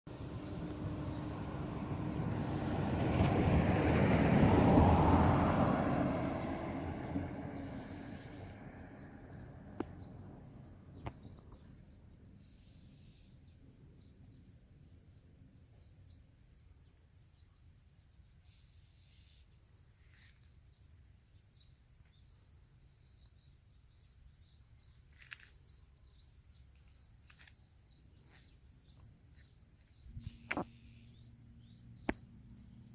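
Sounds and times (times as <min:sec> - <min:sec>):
faint bird chirps: 0:09.3 - 0:32.9.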